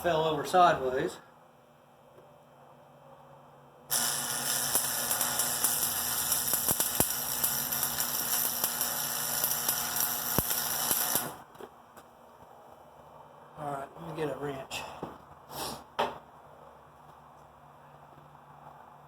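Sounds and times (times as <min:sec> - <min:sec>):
welding arc crackling: 0:03.9 - 0:11.4.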